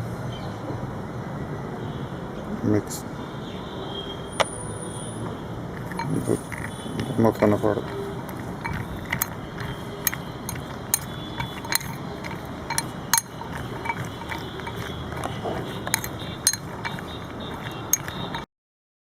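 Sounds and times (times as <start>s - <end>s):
nuts stirred in bowl with spoon: 5.8s - 18.4s.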